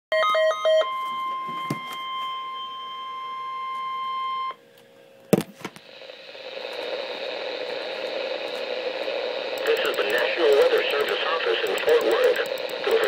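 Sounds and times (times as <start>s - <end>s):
radio hiss: 5.8s - 13.0s
weather radio alarm tone: 6.4s - 13.0s.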